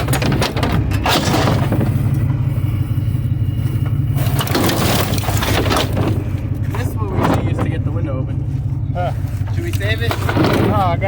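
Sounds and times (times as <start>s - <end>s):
clattering knocks: 0.0s - 2.4s
vehicle engine droning: 0.0s - 11.0s.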